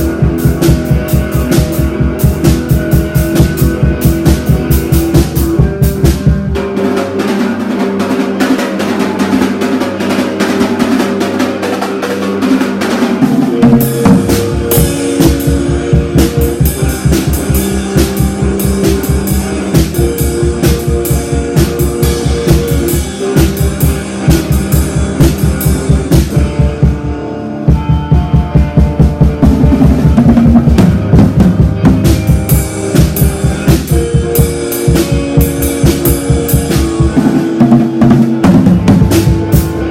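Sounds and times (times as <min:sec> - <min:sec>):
drum kit fast beat: 0:00.0 - 0:39.9
rock music: 0:00.0 - 0:39.9
deep bass: 0:13.6 - 0:37.2.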